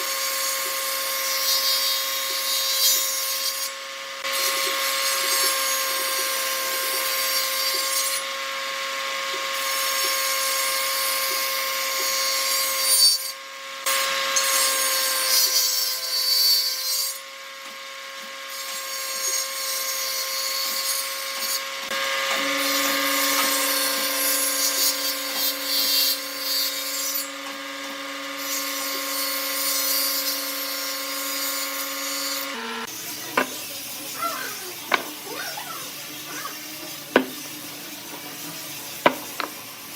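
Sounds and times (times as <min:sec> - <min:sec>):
wood lathe motor humming: 0:00.0 - 0:15.0, 0:17.2 - 0:39.9
turning tool cutting wood: 0:00.0 - 0:39.9.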